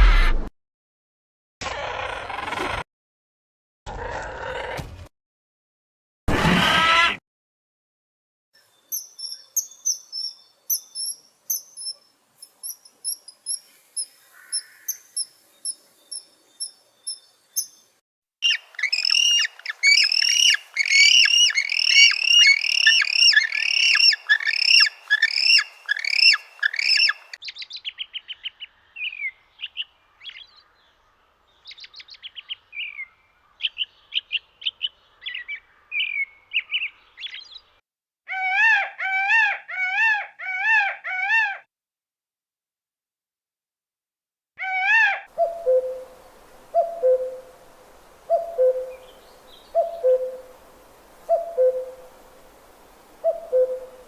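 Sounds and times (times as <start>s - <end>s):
birds chirping: 12.6s - 37.7s, 45.4s - 54.0s.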